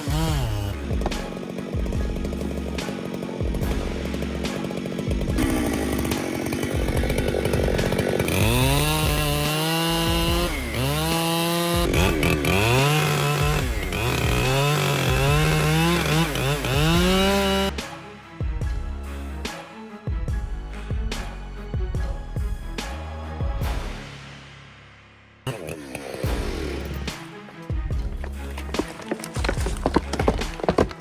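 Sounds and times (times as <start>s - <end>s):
chainsaw cutting tree trunk: 0.0s - 17.8s, 25.5s - 27.1s, 28.0s - 31.0s
music with steady bass beat: 0.1s - 2.9s, 6.8s - 11.1s, 11.7s - 19.5s, 20.1s - 24.0s.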